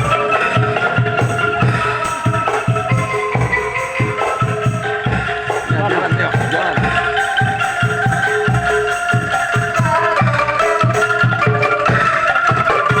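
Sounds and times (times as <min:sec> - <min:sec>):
steady drum beat: 0:00.0 - 0:13.0
sustained melody notes: 0:00.0 - 0:13.0.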